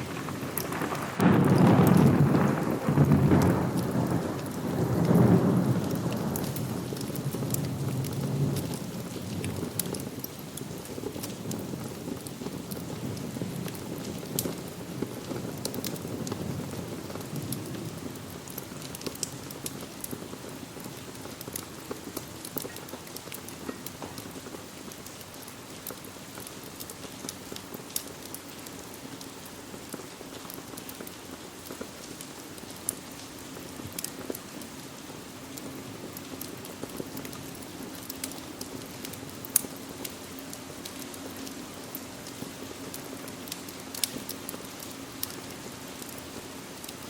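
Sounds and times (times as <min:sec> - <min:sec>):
sharp crackles and pops: 0:00.0 - 0:47.0
steady rain: 0:00.0 - 0:47.0.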